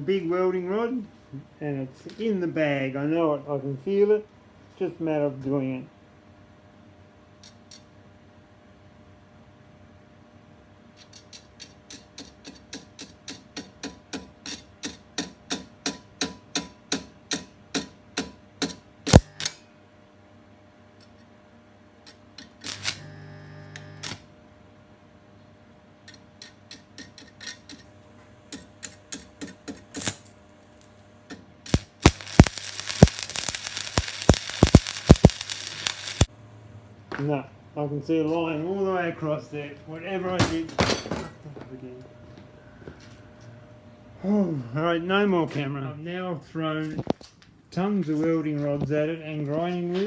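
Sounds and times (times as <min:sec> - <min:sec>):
welding arc crackling: 0:19.1 - 0:19.6, 0:22.6 - 0:24.2, 0:30.0 - 0:31.1, 0:31.7 - 0:36.3.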